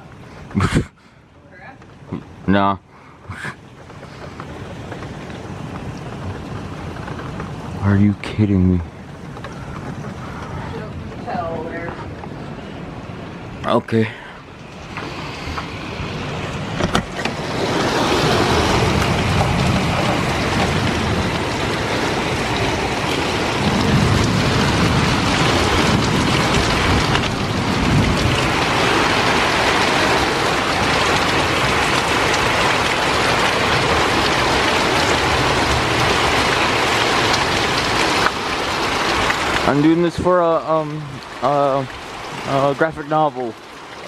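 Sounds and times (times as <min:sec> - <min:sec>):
heavy rain pouring: 0:00.0 - 0:44.0
wind rumbling on microphone: 0:03.2 - 0:13.8, 0:14.4 - 0:40.4.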